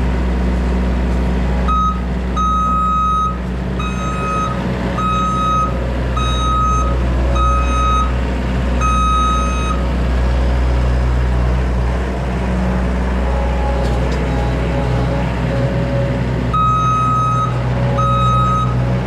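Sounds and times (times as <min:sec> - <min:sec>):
skid steer engine running: 0:00.0 - 0:19.0
reverse alarm beeping: 0:01.7 - 0:08.1, 0:08.8 - 0:09.8, 0:16.5 - 0:18.8.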